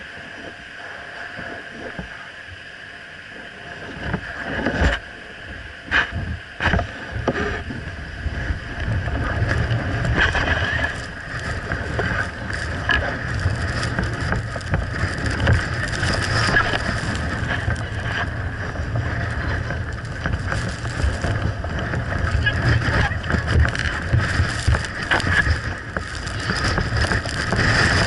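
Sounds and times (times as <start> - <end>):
wind buffeting microphone: 5.7 - 28.0
snowboard scraping icy snow: 5.8 - 28.0.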